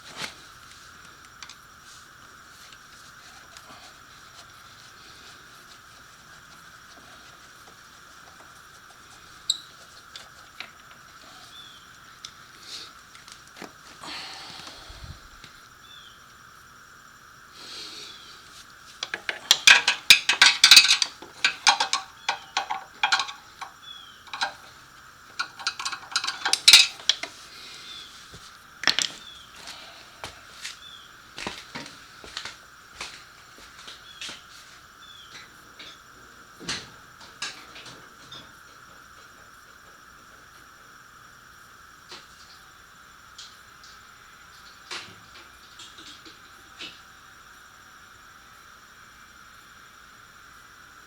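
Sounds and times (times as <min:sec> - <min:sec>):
faint steady hum: 0:00.0 - 0:51.0
metal hand tools clinking: 0:19.0 - 0:27.3.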